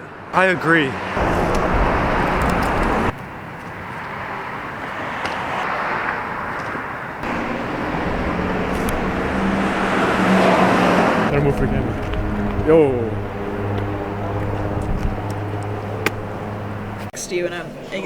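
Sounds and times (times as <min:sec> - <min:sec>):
car road noise: 0:00.0 - 0:17.2
low engine hum: 0:01.2 - 0:03.2, 0:07.2 - 0:17.1.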